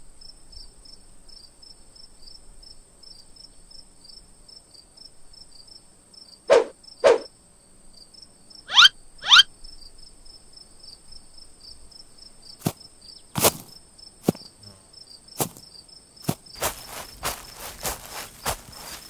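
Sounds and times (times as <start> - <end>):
crickets chirping: 0.2 - 19.0
quick rising swoops: 6.5 - 7.3
footsteps: 12.6 - 12.8, 13.4 - 14.6, 15.4 - 15.6, 16.2 - 19.0.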